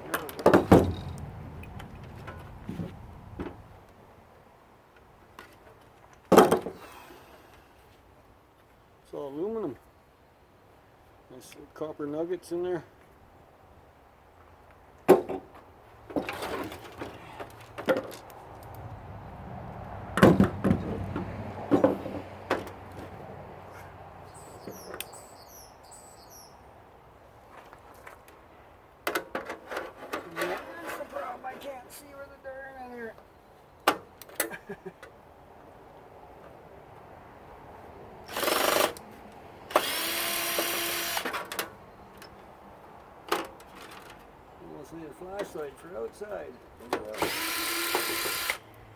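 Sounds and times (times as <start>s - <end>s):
bird chirps: 24.3s - 26.6s
power drill spinning: 38.3s - 39.0s, 39.7s - 41.4s, 47.2s - 48.6s.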